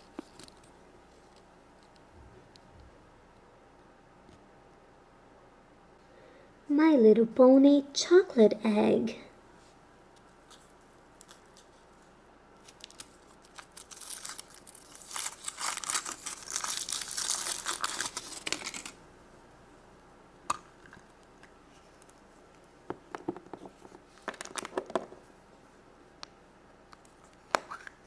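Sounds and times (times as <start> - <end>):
foil wrapper crinkling: 12.6 - 19.0.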